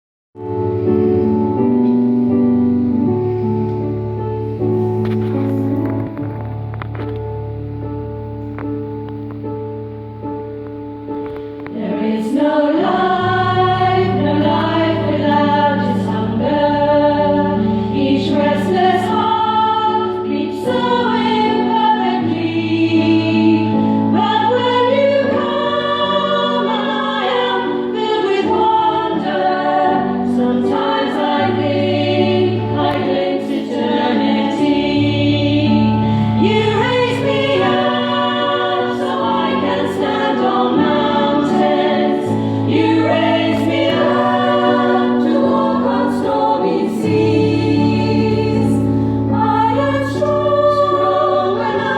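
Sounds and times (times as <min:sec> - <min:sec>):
women's choir singing: 0:11.6 - 0:51.9.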